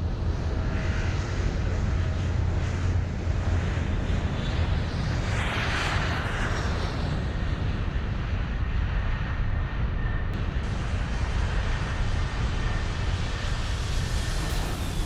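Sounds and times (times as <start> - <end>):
jet engine drone: 0.0 - 15.0
faint high whine: 10.1 - 15.0.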